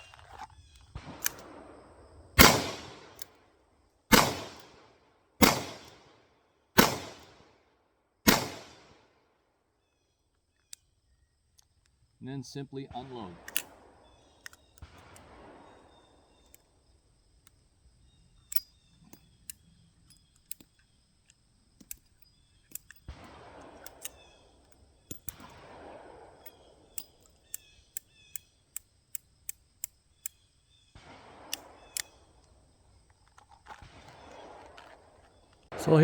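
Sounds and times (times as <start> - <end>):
revolver cylinder clicking: 18.4 - 25.5, 26.4 - 30.5, 31.5 - 32.6.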